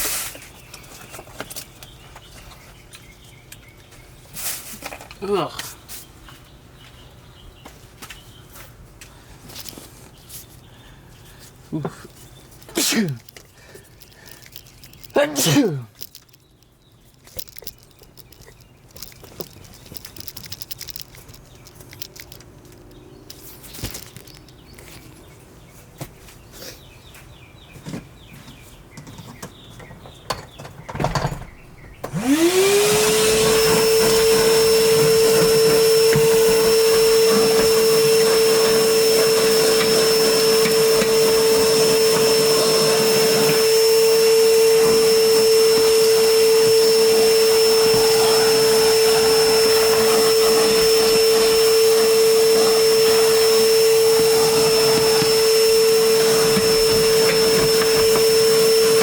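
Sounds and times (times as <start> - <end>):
knocks and handling sounds: 11.9 - 15.2, 15.9 - 25.3
vacuum cleaner motor whining: 31.2 - 59.0.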